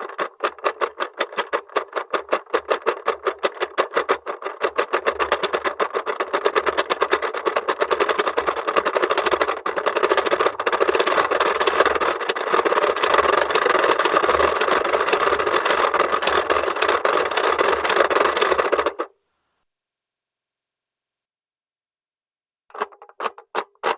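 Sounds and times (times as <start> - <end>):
clockwork toy clicking rapidly: 0.0 - 19.1.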